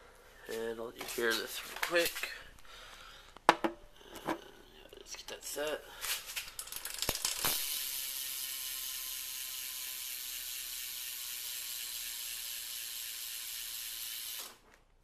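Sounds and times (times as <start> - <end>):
bicycle freewheel ratcheting buzz: 6.6 - 14.6.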